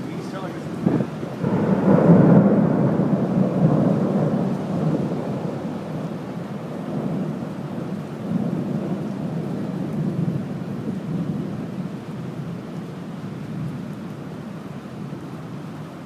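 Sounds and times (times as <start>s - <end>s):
thunder rumbling: 0.0s - 11.8s
rain falling: 0.0s - 16.0s.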